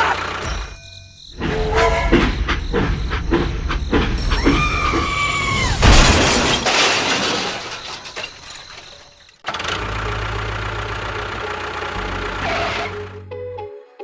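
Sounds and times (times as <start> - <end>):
loud crash: 1.4 - 9.2.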